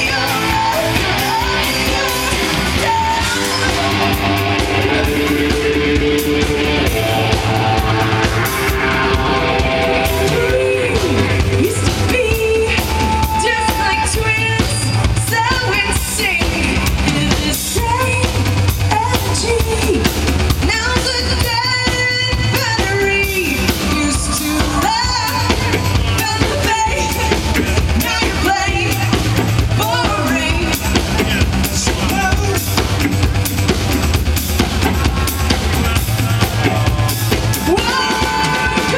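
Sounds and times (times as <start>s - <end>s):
woman singing: 0.0s - 6.1s, 10.0s - 31.1s, 37.6s - 38.9s
drum kit steady beat: 0.0s - 38.9s
pop-rock band playing live: 0.0s - 38.9s.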